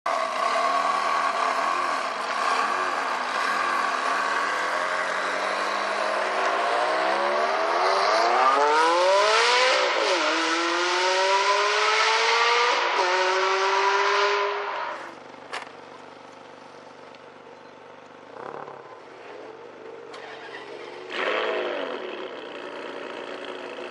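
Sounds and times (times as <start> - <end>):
car engine accelerating hard: 0.1 - 15.2, 20.1 - 23.9.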